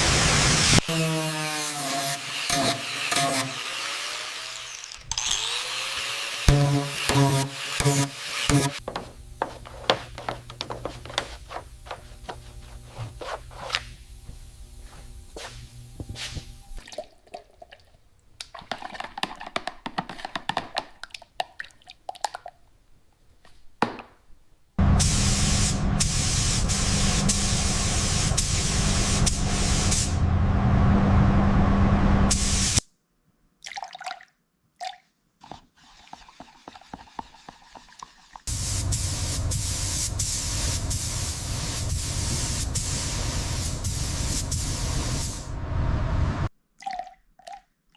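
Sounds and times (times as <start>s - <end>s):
loud spraying hiss: 25.0s - 30.2s, 38.5s - 45.5s
low motor hum: 28.5s - 32.4s, 45.4s - 46.5s
dripping: 46.8s - 47.9s.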